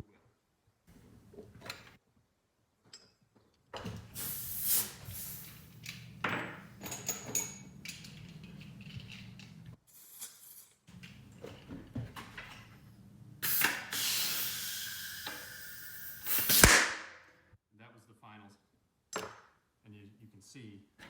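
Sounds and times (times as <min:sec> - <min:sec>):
air hissing into bike tire: 0:04.2 - 0:05.8, 0:09.9 - 0:10.7, 0:13.4 - 0:17.0.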